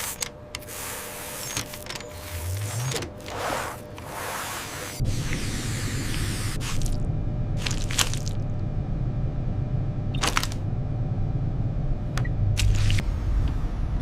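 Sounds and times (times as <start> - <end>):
spaceship cabin hum: 0.0 - 14.0.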